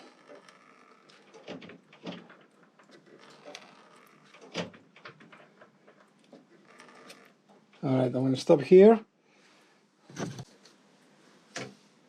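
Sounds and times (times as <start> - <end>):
light clicks and knocks of parts: 0.0 - 7.9.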